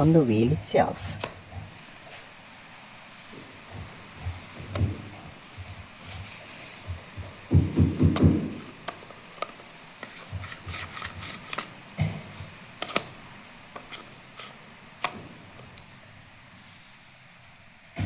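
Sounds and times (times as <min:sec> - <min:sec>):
bumping and rubbing of plastic pump: 0:10.0 - 0:12.2.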